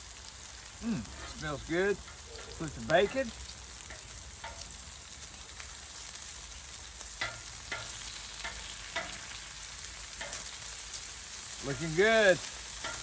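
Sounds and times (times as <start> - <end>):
meat sizzling on a griddle: 0.0 - 13.0
utensil clicking on griddle: 2.0 - 4.8, 7.0 - 10.7, 11.7 - 13.0.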